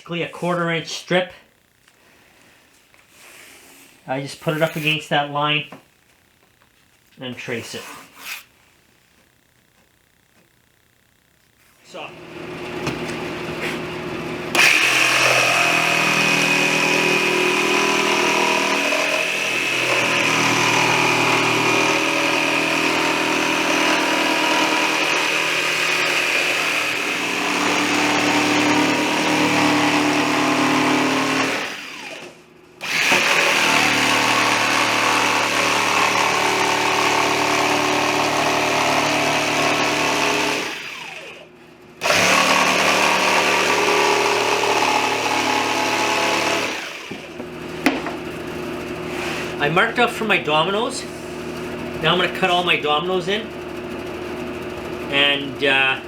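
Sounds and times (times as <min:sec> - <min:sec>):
power tool motor running: 0:12.1 - 0:49.7
power tool winding down: 0:12.2 - 0:47.5.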